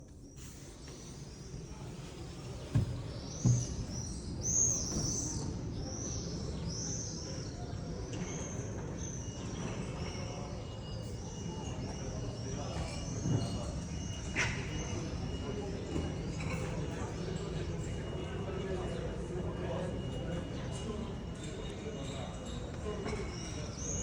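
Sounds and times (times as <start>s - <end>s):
birds chirping: 0.6s - 6.6s
dull knocks: 2.6s - 4.1s.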